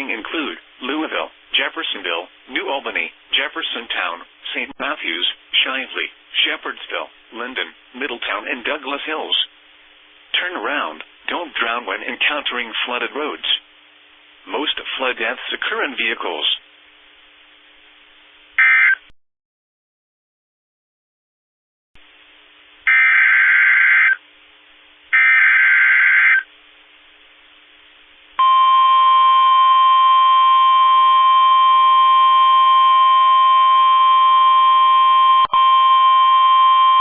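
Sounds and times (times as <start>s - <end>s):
steady warning alarm tone: 22.9s - 24.2s, 25.2s - 26.4s, 28.4s - 37.0s.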